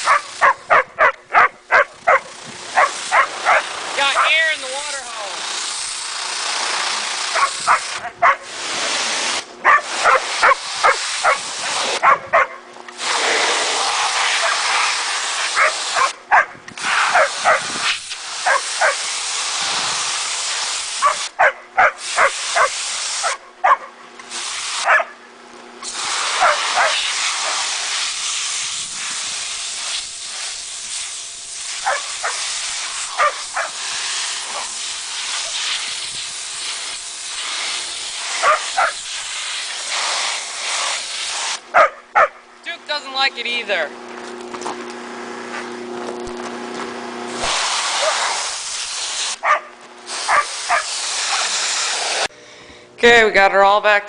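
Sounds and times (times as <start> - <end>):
dog barking: 0.0 - 4.4, 7.3 - 8.4, 9.6 - 11.4, 12.0 - 12.6, 14.4 - 14.6, 15.6 - 17.7, 18.4 - 19.0, 21.0 - 23.9, 24.8 - 25.2, 26.4 - 27.6, 31.8 - 32.4, 33.2 - 33.8, 38.4 - 39.0, 41.8 - 42.4, 48.0 - 48.3, 49.4 - 49.7, 50.3 - 51.5
pressure washer spraying: 0.0 - 16.2, 16.8 - 23.4, 24.2 - 25.0, 25.8 - 42.3, 47.3 - 52.3.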